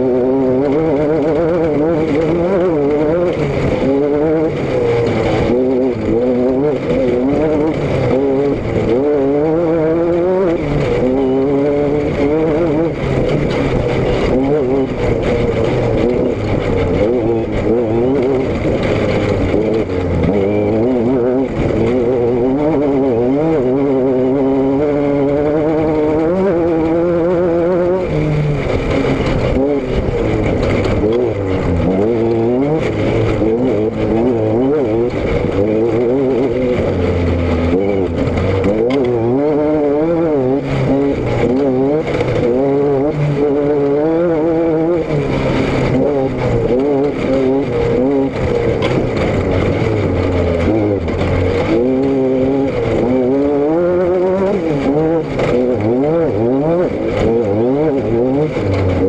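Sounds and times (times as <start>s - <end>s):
steady rushing noise: 0.0s - 59.0s
vehicle engine running: 0.0s - 59.0s.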